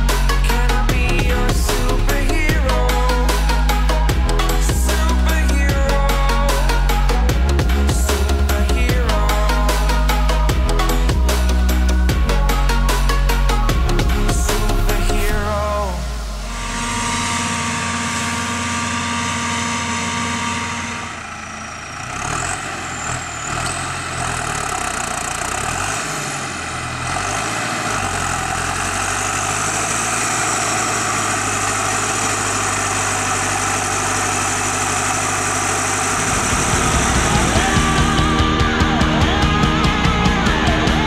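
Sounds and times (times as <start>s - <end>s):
diesel engine running: 0.0s - 41.0s
brief high whine: 15.2s - 22.0s, 30.9s - 41.0s.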